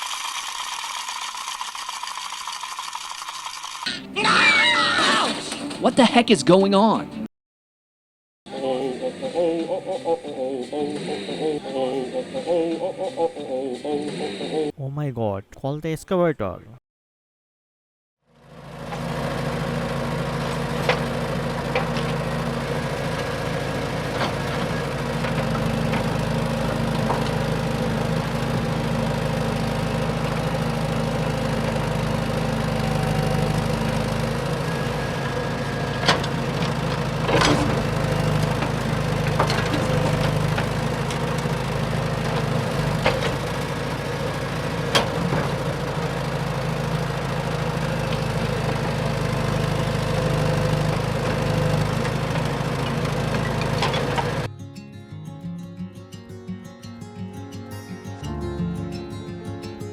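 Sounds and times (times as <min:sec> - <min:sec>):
machine engine idling: 0:18.6 - 0:54.5.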